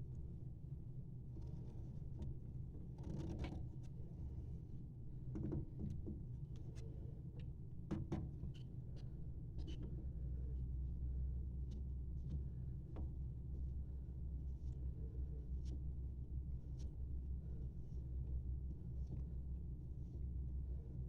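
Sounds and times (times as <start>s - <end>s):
steady low hum: 8.5s - 21.0s.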